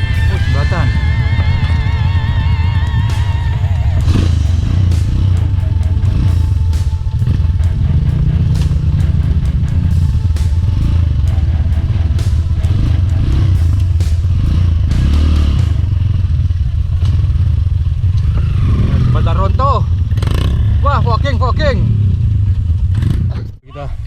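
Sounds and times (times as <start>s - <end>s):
motorcycle engine revving: 0.0s - 23.5s.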